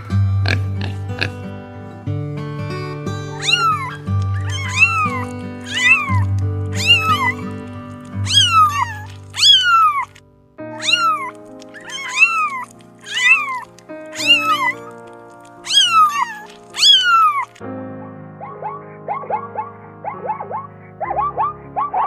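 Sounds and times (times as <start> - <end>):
background music: 0.0 - 22.0
cat-like meowing calls: 3.3 - 7.6, 8.2 - 14.8, 15.6 - 17.6.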